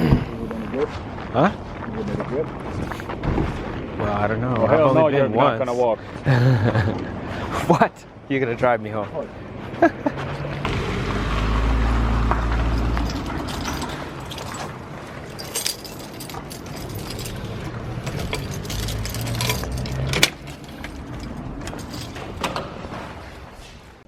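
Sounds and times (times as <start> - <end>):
keys jangling: 12.6 - 22.6.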